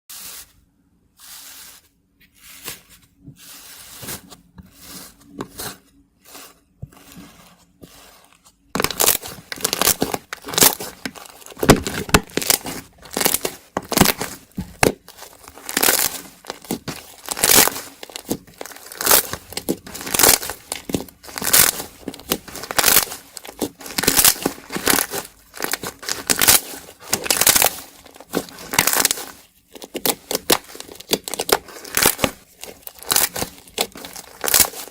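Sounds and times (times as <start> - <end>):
slime crust crackling: 7.0 - 34.9.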